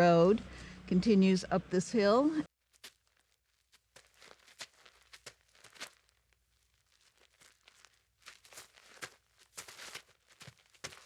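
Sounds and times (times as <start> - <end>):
footsteps crunching on dirt road: 2.6 - 11.0.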